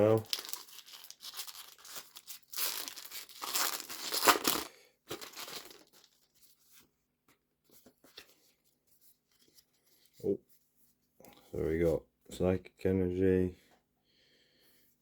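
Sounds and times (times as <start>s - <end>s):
foil wrapper tearing: 0.0s - 6.3s
foil rustling: 0.0s - 6.7s.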